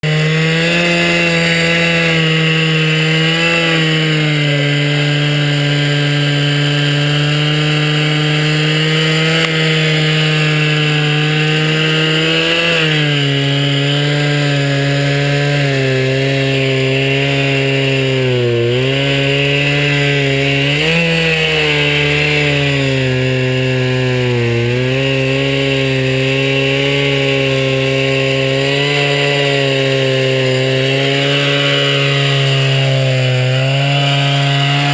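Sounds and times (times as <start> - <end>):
chainsaw cutting log: 0.0 - 34.9.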